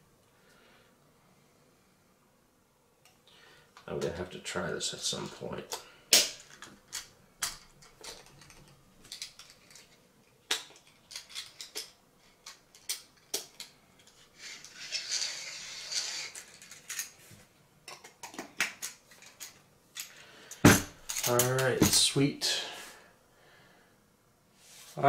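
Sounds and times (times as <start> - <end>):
coffee grinder scraping rattle: 14.0 - 17.2.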